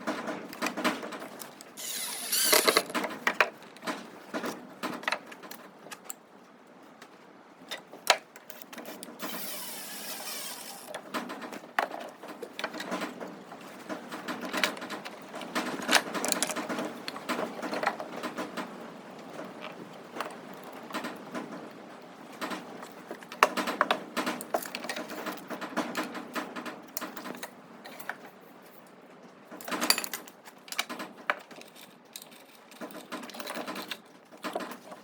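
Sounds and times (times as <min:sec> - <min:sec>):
clicks and knocks of tools: 0:00.0 - 0:06.2, 0:07.7 - 0:18.7, 0:29.5 - 0:35.0.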